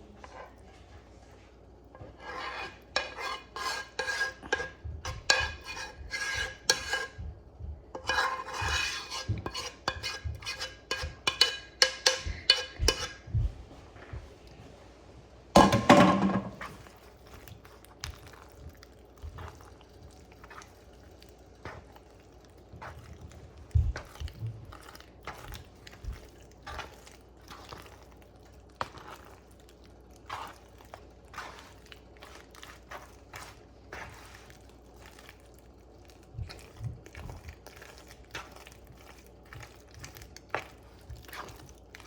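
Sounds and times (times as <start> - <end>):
metal utensil scraping a pot: 2.0 - 7.2, 8.0 - 13.2.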